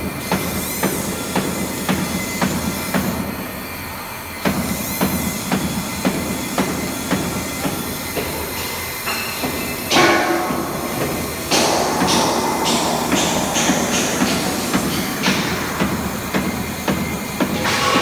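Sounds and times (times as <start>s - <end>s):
machine hum: 9.0s - 18.0s
hissing burst: 9.9s - 16.9s.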